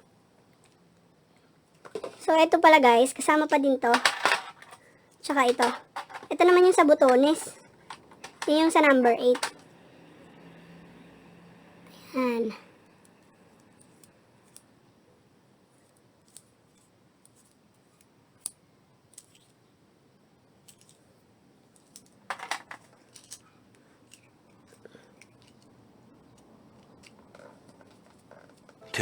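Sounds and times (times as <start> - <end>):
plastic accessories clicking: 1.8 - 2.3, 3.8 - 9.6, 21.8 - 23.4.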